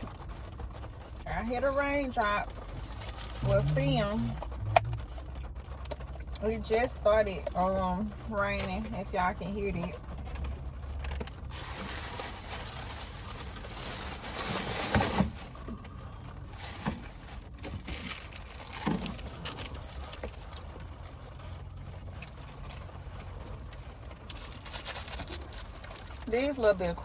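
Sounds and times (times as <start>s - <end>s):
rain falling: 0.0s - 15.7s.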